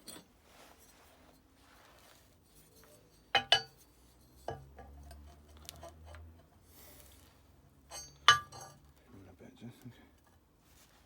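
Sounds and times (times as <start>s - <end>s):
steel pieces clinking together: 3.1s - 3.8s, 7.9s - 8.8s.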